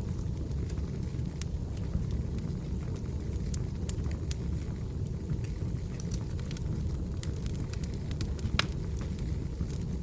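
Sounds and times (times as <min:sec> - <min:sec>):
fire crackling and popping: 0:00.0 - 0:10.0
fire rumbling: 0:00.0 - 0:10.0.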